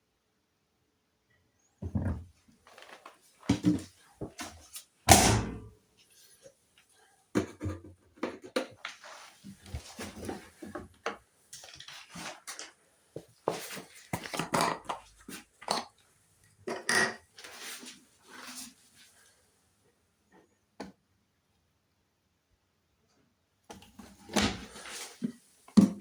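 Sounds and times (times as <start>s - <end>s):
washing machine drum thudding: 5.1s - 5.7s.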